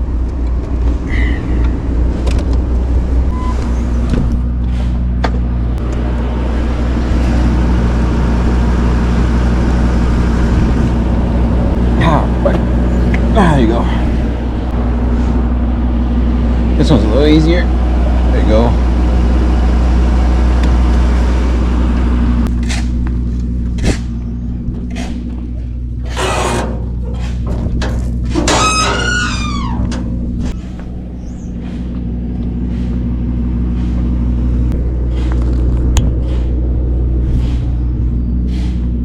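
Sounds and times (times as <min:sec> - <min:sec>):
truck engine idling: 0:00.0 - 0:39.0
scraping squeal: 0:03.3 - 0:04.1, 0:23.8 - 0:31.9
junk knocking and clattering: 0:22.5 - 0:36.7.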